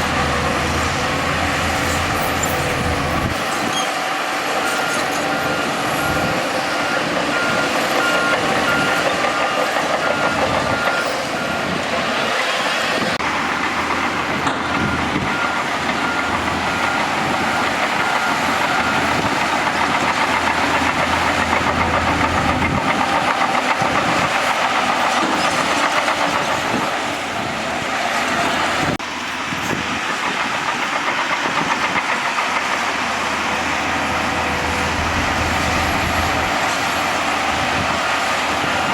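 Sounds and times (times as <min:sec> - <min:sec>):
bulldozer diesel engine: 0:00.0 - 0:38.9
reversing alarm beeping: 0:04.6 - 0:11.9, 0:13.3 - 0:24.5.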